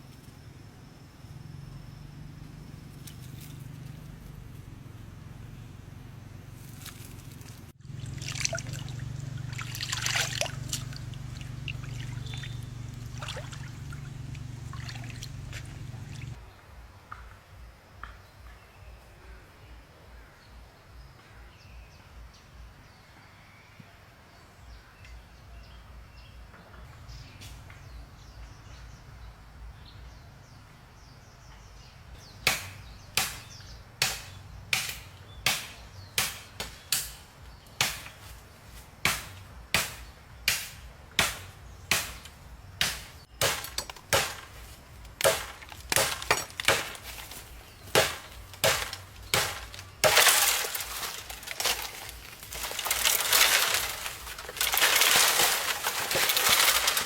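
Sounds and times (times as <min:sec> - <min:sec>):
continuous rasping noise: 0:32.4 - 0:57.0
tool striking: 0:42.0 - 0:57.0.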